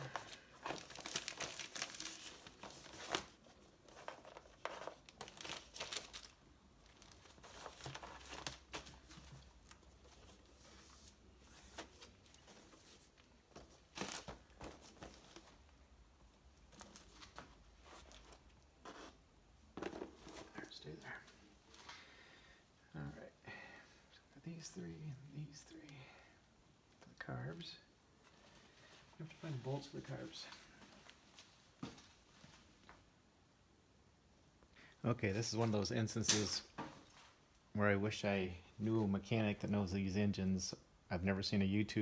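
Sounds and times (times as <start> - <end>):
plastic wrapping crinkling: 0.0 - 3.4, 4.0 - 10.3, 13.8 - 15.6.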